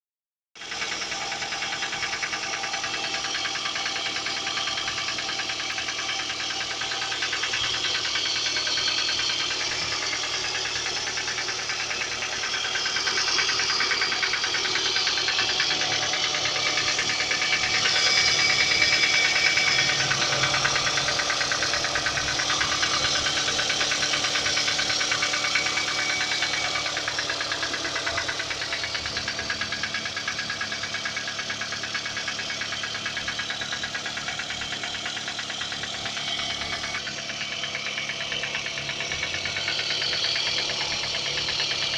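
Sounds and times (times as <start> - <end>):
engine idling with rapid knocking: 0.6 - 41.9.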